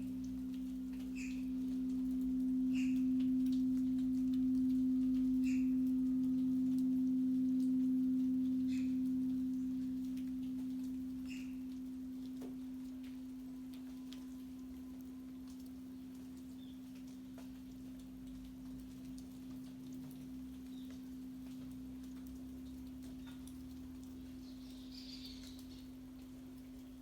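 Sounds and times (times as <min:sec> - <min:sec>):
singing bowl ringing: 0:00.0 - 0:17.2.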